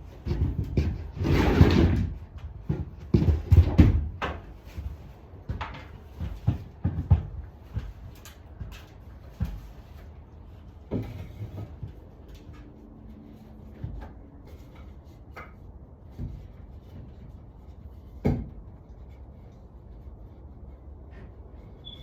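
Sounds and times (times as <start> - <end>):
knocks and taps of objects handled: 2.4 - 10.2, 13.6 - 19.2.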